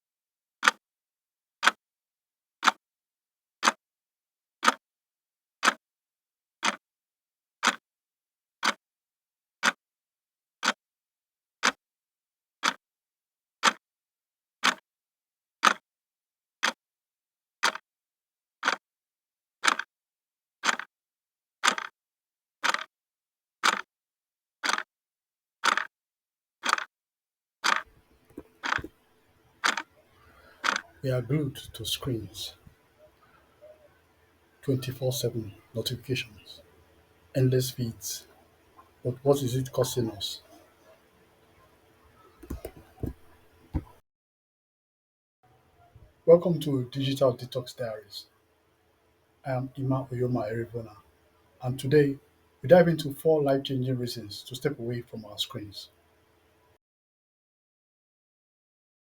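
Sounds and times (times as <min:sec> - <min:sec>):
clock ticking: 0:19.6 - 0:19.8, 0:20.6 - 0:20.9, 0:21.6 - 0:21.9, 0:22.6 - 0:22.9, 0:23.6 - 0:23.9, 0:24.6 - 0:24.8, 0:25.6 - 0:25.9, 0:26.6 - 0:26.9, 0:27.6 - 0:28.9, 0:29.6 - 0:32.7
faint background sound: 0:27.9 - 0:44.0, 0:45.5 - 0:56.8.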